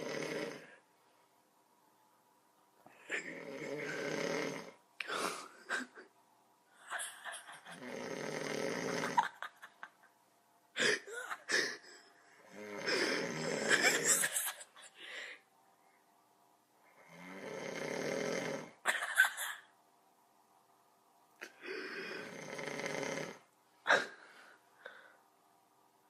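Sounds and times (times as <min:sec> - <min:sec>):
person snoring heavily: 0:00.0 - 0:00.8, 0:03.1 - 0:05.5, 0:07.7 - 0:09.4, 0:12.4 - 0:14.2, 0:17.0 - 0:18.8, 0:21.6 - 0:24.3.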